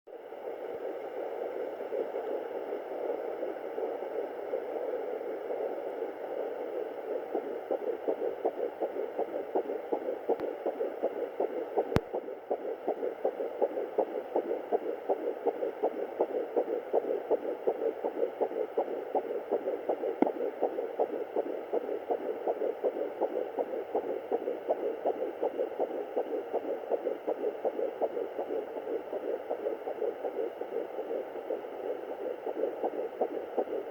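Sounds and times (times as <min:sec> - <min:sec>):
fetal heartbeat on doppler: 0:00.1 - 0:33.9.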